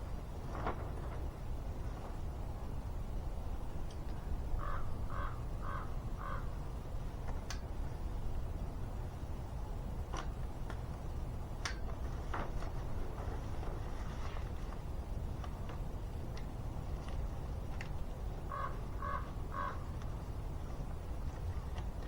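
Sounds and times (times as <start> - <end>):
bird calling: 4.6 - 6.6, 18.5 - 19.9.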